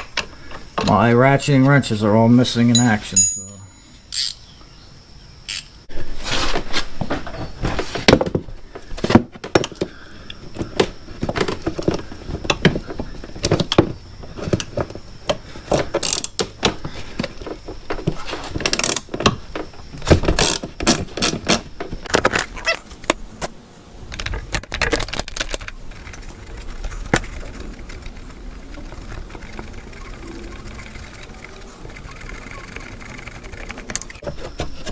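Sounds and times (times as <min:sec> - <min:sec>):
wrench clanking on metal: 0:02.7 - 0:04.4.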